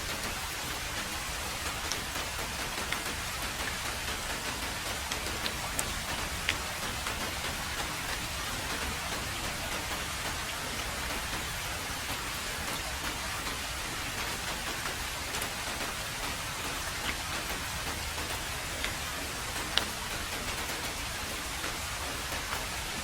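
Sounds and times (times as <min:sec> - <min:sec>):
heavy rain on a road: 0:00.0 - 0:23.0
rain drop ticks: 0:00.0 - 0:23.0.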